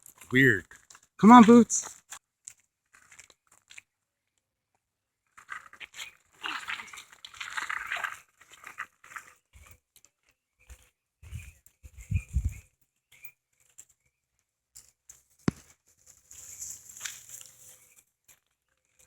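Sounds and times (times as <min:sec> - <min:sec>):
light clicks and rustles: 0:13.1 - 0:19.0.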